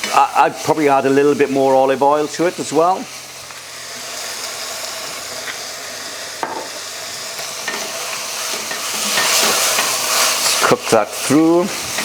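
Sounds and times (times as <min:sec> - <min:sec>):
food sizzling in olive oil: 0:00.0 - 0:12.0.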